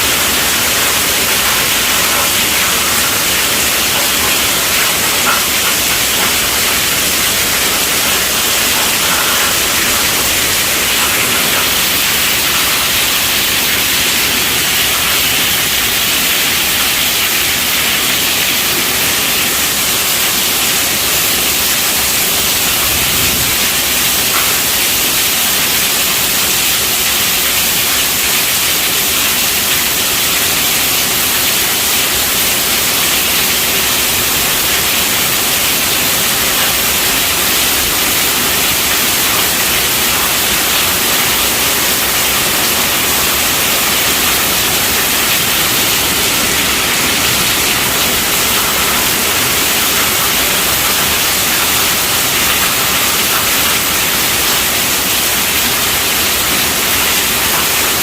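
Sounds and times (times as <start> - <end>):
heavy rain on a tent roof: 0.0 - 58.0.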